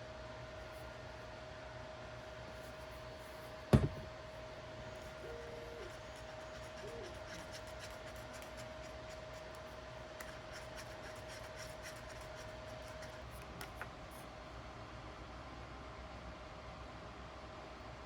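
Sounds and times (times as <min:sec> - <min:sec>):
faint steady tone: 0:04.7 - 0:08.6
hand scratching and rubbing: 0:05.2 - 0:13.5.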